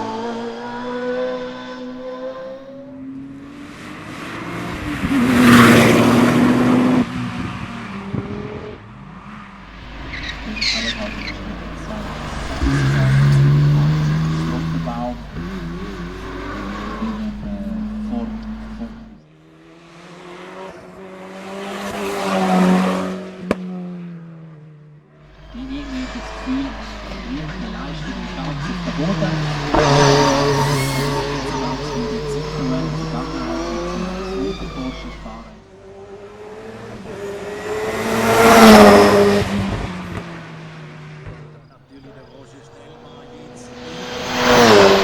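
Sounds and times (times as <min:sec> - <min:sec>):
another car engine: 0:00.0 - 0:45.0
race car passing at full throttle: 0:00.0 - 0:45.0.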